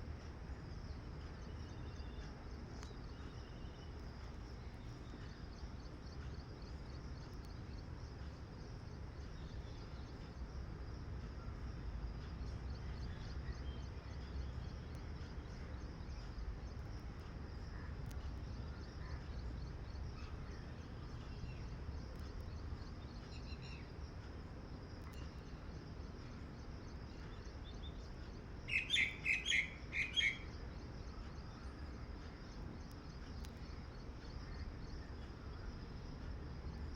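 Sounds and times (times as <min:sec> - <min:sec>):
loud high chirping calls: 0:28.7 - 0:30.5.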